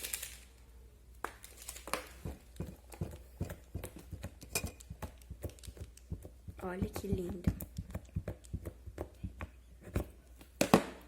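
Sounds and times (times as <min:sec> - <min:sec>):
slime squelching and clicking: 0:01.9 - 0:09.3.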